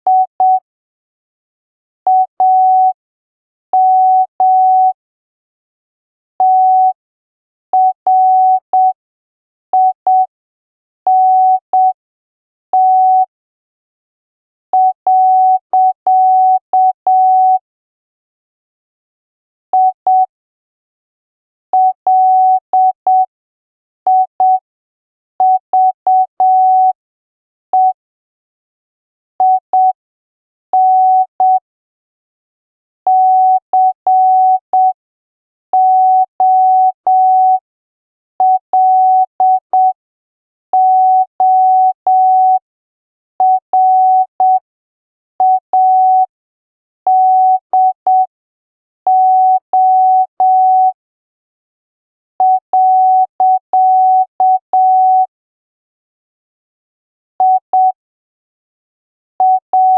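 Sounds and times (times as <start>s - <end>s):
morse code beeps: 19.8s - 20.3s, 21.8s - 23.3s, 24.1s - 24.6s, 29.4s - 30.0s, 30.8s - 31.6s, 33.1s - 35.0s, 38.4s - 40.0s, 43.4s - 44.6s, 47.1s - 48.3s, 49.1s - 51.0s, 52.4s - 55.3s, 57.4s - 58.0s, 59.4s - 59.9s.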